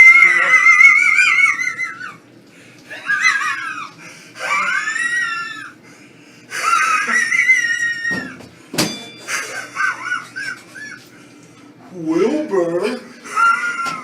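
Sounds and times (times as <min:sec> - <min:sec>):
person wheezing laugh: 0:02.9 - 0:05.2, 0:06.5 - 0:08.0.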